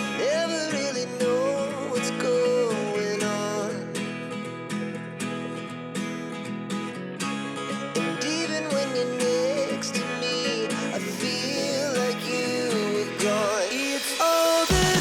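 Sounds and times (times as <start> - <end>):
strummed acoustic guitar: 0.0 - 15.0.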